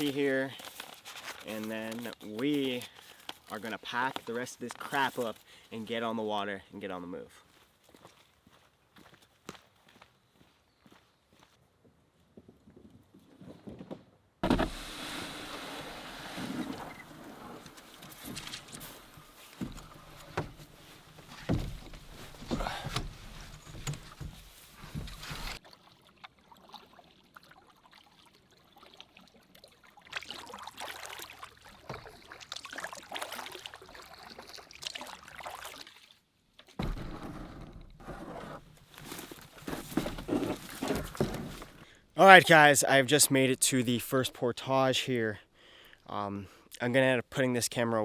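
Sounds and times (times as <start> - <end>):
paddle strokes in water: 14.4 - 41.8.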